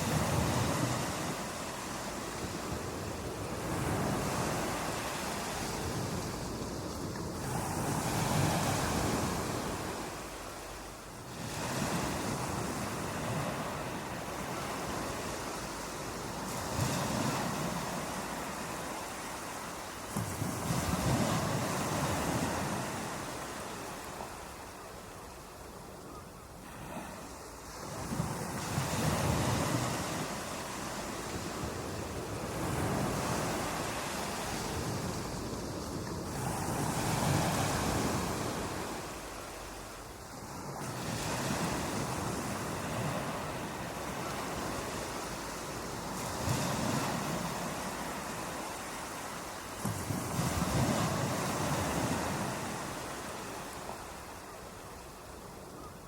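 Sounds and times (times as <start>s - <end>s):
wind noise: 0.0s - 10.3s, 26.1s - 39.3s
surf breaking on a beach: 0.0s - 24.8s, 26.6s - 56.0s.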